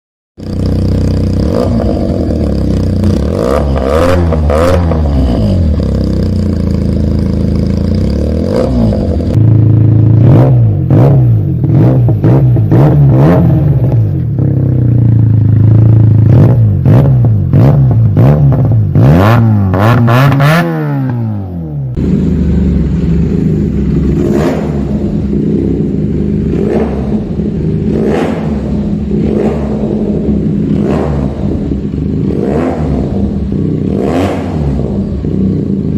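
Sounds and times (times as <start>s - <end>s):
motorcycle engine revving: 0.4s - 35.9s.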